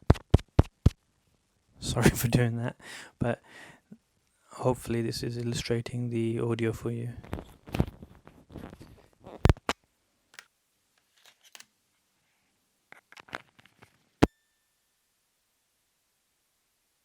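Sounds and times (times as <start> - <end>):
microphone handling noise: 7.2 - 9.7.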